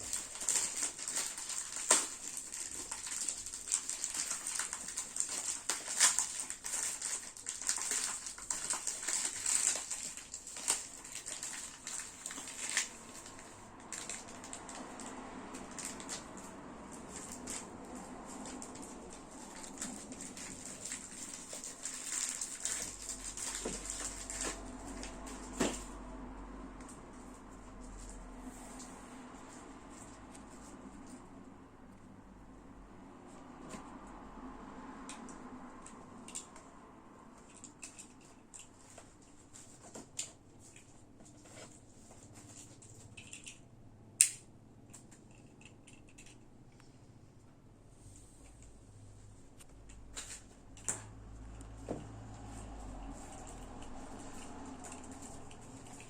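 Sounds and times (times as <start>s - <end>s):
toy packaging rustling: 0.0s - 26.0s, 52.5s - 56.0s
sharp plastic click: 44.2s - 44.5s.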